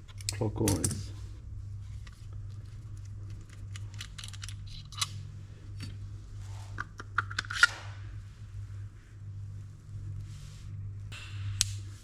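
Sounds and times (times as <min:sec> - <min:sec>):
steady low hum: 0:00.0 - 0:12.0
small metal parts clicking: 0:03.3 - 0:05.2.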